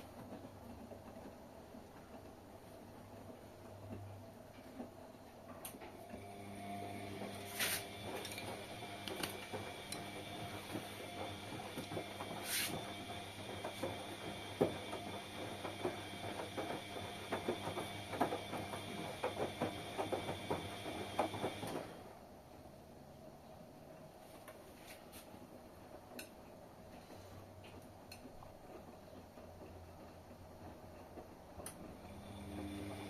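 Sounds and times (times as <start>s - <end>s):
washing machine motor humming: 0.0s - 23.4s, 27.7s - 33.0s
laundry clicking and rattling: 7.2s - 22.1s.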